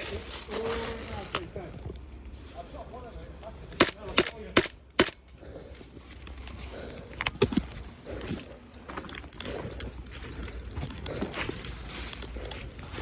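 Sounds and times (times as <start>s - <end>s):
rustling handling noise: 0.0s - 3.9s
sharp clicks: 3.8s - 5.3s.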